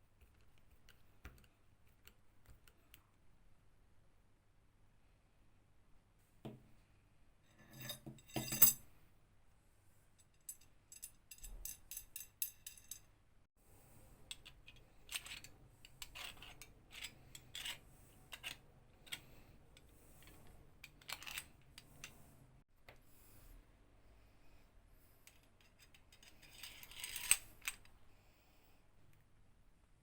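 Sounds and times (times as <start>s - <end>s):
small metallic clicks and clinks: 10.2s - 13.1s.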